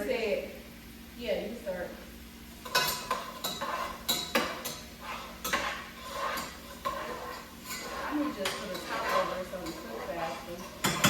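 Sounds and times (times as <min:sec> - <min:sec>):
spoon scraping a metal pot: 0:02.6 - 0:11.0.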